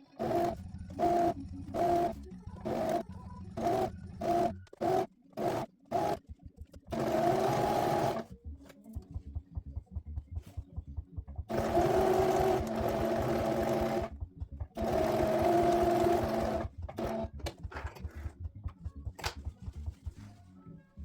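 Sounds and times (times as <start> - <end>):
sewing machine stitching: 0.0 - 6.2, 6.9 - 8.3, 11.5 - 18.4.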